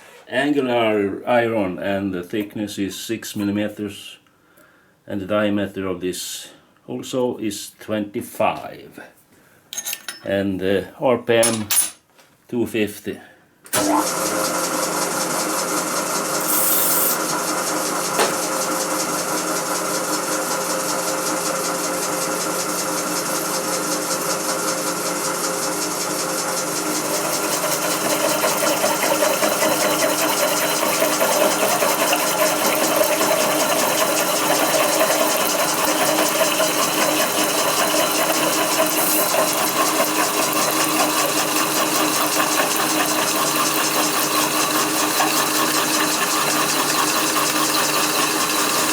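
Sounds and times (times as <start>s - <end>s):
drill with hole saw running: 13.8s - 48.9s
hole saw grinding into metal: 16.4s - 17.3s, 26.6s - 48.9s.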